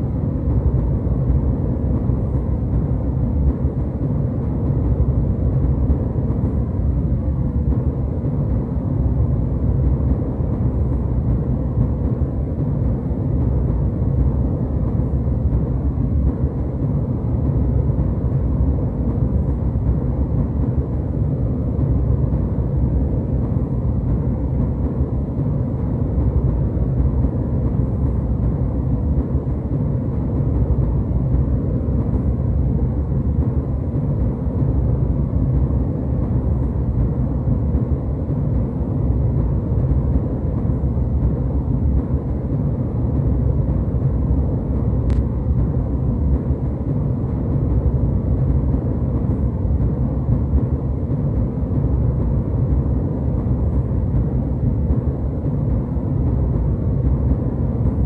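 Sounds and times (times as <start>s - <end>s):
airliner cabin engine rumble: 0.0s - 58.0s.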